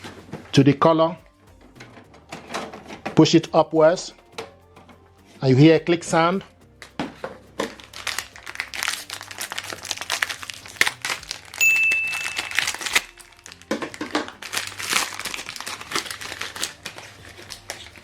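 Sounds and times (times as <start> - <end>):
plastic packaging crinkling: 0.0 - 0.6, 6.8 - 18.0
steady high beep: 11.6 - 13.1.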